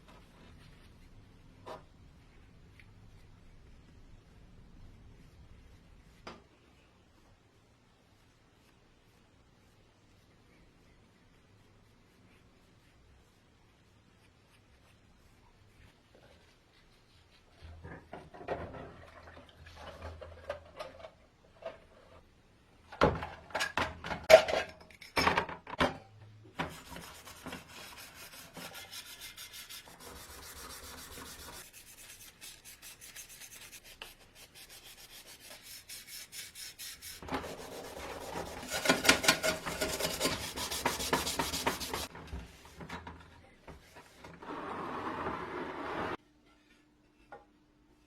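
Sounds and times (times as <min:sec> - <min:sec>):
hand sanding strokes: 0:03.1 - 0:17.6, 0:26.6 - 0:42.1.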